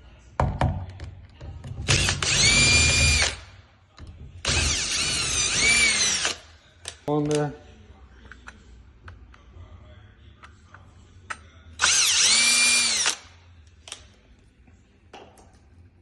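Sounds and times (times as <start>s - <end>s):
cordless drill driving screws: 1.9s - 3.4s, 4.4s - 6.4s, 11.8s - 13.2s.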